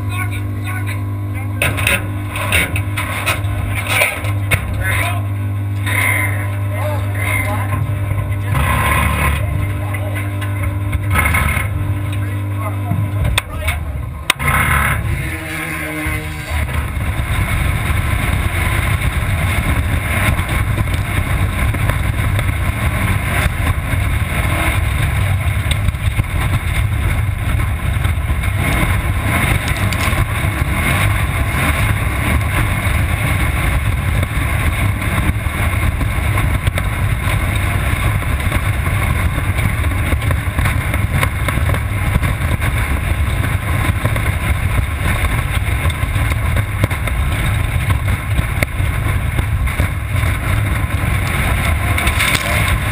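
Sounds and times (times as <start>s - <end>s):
race car engine rumble: 0.0s - 52.9s
rattling and knocks: 1.6s - 4.8s.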